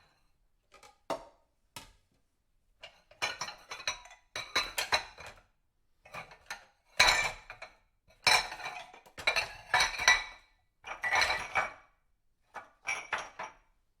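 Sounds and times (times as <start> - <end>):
dishes clinking and clattering: 6.1 - 11.9, 12.6 - 13.7.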